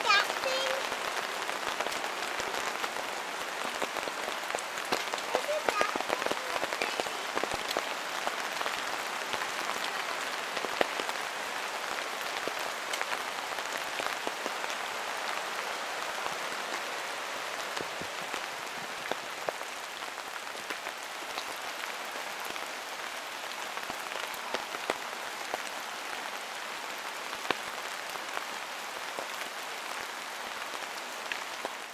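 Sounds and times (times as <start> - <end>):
raindrops ticking: 0.0 - 14.5
rain falling in a forest: 0.0 - 31.9.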